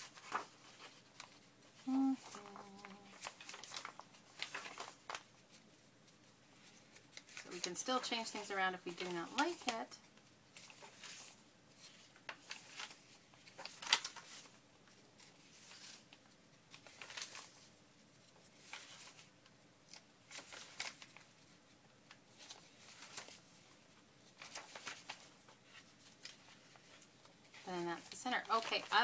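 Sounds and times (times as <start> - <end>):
paper rustling and sliding: 0.0 - 8.5, 9.2 - 19.3, 19.9 - 29.0.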